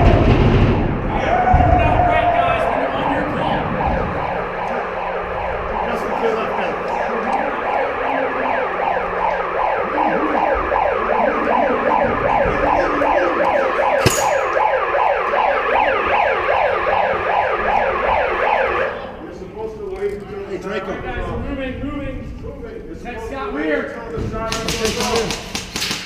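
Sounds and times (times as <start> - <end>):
electronic siren falling sweeps: 2.1 - 19.2.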